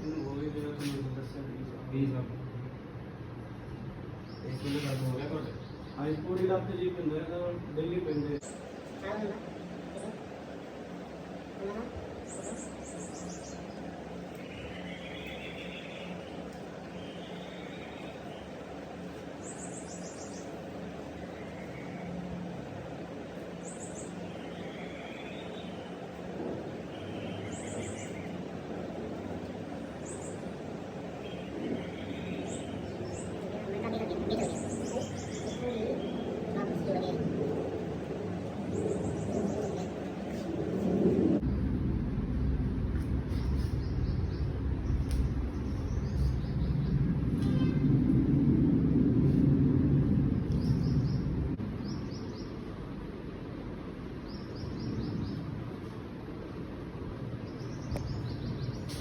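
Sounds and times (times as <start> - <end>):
steady background noise: 0.0 - 59.0
small birds chirping: 3.7 - 40.9, 43.2 - 47.8, 50.4 - 53.5, 54.1 - 59.0
low background rumble: 6.6 - 58.9
small bird chirping: 12.2 - 22.2, 26.9 - 28.5, 30.0 - 37.1
low rumble: 36.9 - 58.9.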